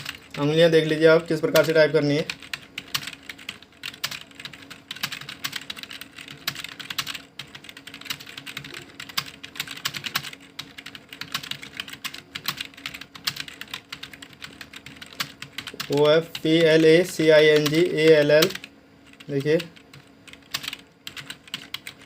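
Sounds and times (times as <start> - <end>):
keyboard typing: 0.0 - 22.0.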